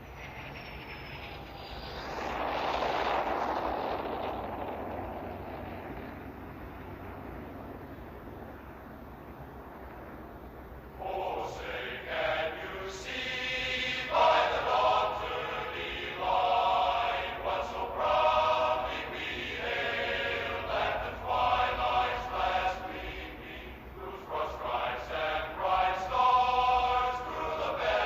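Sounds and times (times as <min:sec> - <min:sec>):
choir singing slowly: 0:10.9 - 0:28.0.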